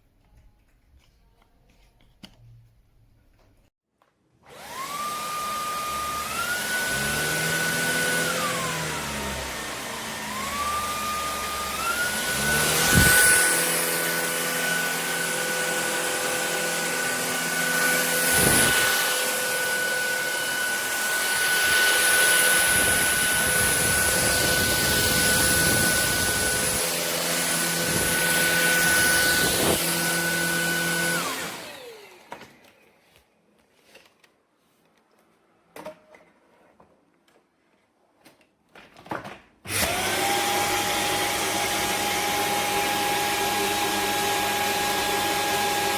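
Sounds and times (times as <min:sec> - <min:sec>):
vacuum cleaner motor whining: 0:04.4 - 0:33.0, 0:39.7 - 0:45.9.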